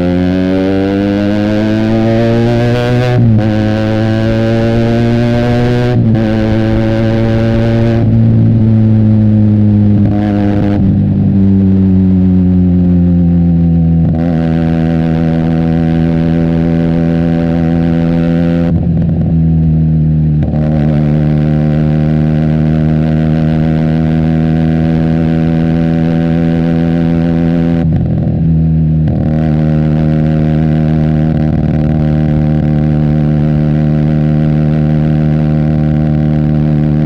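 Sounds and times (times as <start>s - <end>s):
motorcycle engine running: 0.0s - 37.0s.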